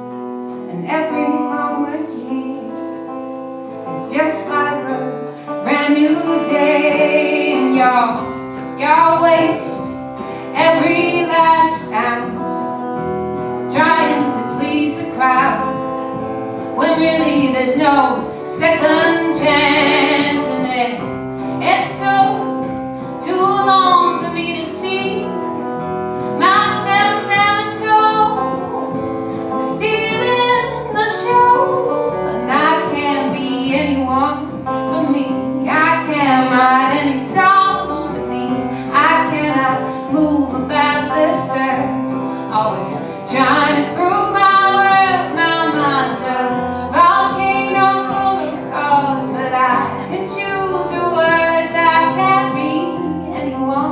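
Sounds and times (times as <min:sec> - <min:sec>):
woman singing: 0:00.6 - 0:12.9, 0:13.6 - 0:53.9.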